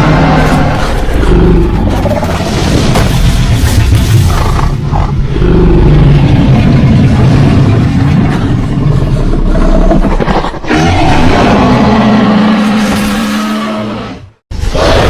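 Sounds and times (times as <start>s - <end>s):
low rumbling creature growl: 0.0s - 15.0s.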